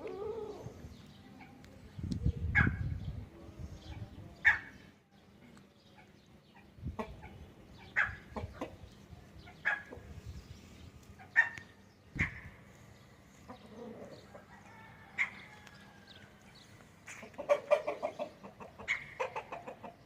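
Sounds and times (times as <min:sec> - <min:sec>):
cockerels clucking: 0:06.0 - 0:10.2, 0:16.4 - 0:20.0.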